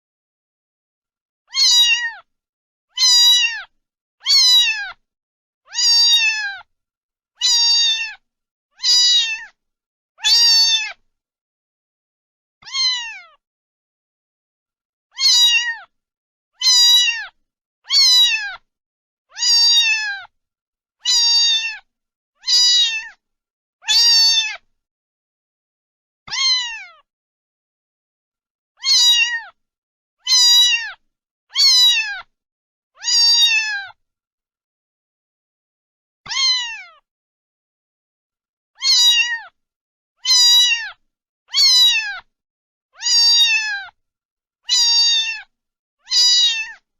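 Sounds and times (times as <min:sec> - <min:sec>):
cat meowing: 0:01.5 - 0:02.3, 0:02.9 - 0:05.0, 0:05.7 - 0:06.7, 0:07.4 - 0:08.2, 0:08.8 - 0:09.6, 0:10.2 - 0:11.0, 0:12.6 - 0:13.4, 0:15.1 - 0:15.9, 0:16.6 - 0:18.7, 0:19.3 - 0:20.3, 0:21.0 - 0:23.2, 0:23.8 - 0:24.6, 0:26.3 - 0:27.1, 0:28.8 - 0:29.6, 0:30.2 - 0:32.3, 0:33.0 - 0:34.0, 0:36.3 - 0:37.0, 0:38.8 - 0:39.6, 0:40.2 - 0:42.3, 0:43.0 - 0:44.0, 0:44.7 - 0:46.8.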